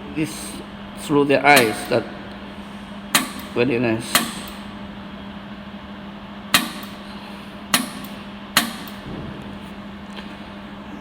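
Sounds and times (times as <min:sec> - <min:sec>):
steady low hum: 0:00.0 - 0:11.0
laser welder snaps: 0:03.1 - 0:04.6, 0:06.5 - 0:07.0, 0:07.7 - 0:09.0.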